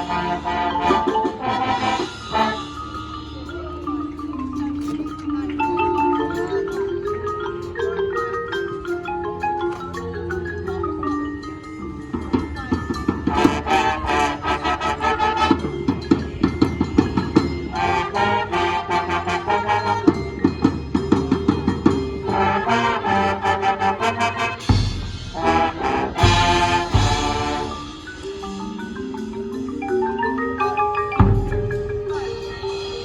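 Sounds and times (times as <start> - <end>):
marching band brass chords: 0.0 - 3.3, 13.2 - 28.2
rapid drum strokes: 24.6 - 28.9.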